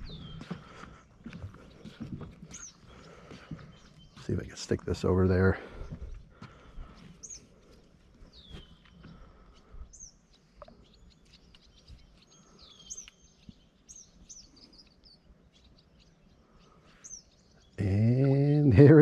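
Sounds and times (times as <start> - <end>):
birds whistling calls: 0.0 - 4.6, 5.7 - 18.1
bird chirps: 0.0 - 6.3, 6.9 - 18.7
man's voice: 4.2 - 5.6, 17.8 - 19.0.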